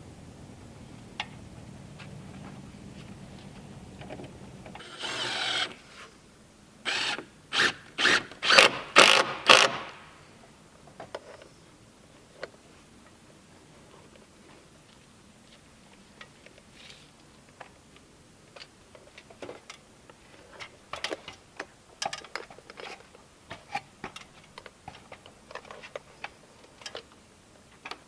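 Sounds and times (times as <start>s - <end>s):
woodworking tool bursts: 4.8s - 5.9s, 6.9s - 10.1s.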